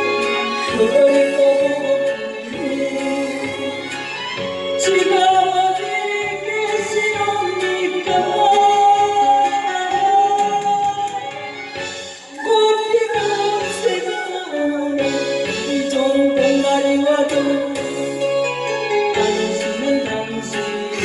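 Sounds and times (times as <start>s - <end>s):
backing band playing: 0.0s - 12.5s.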